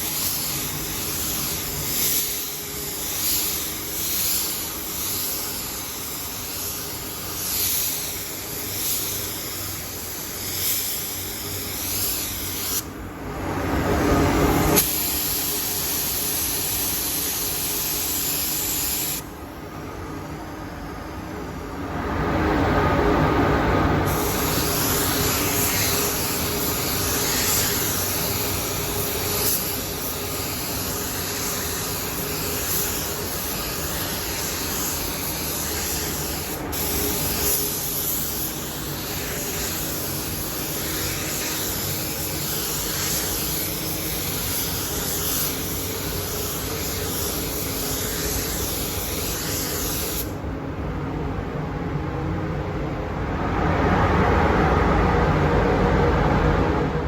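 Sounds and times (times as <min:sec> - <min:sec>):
paint spray gun hissing: 0:00.0 - 0:12.9, 0:14.7 - 0:19.3, 0:24.1 - 0:50.4.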